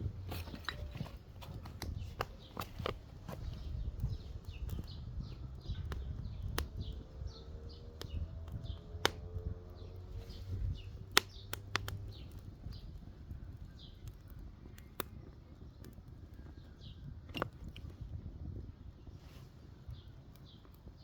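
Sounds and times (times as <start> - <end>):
campfire crackling and popping: 0.0 - 21.0.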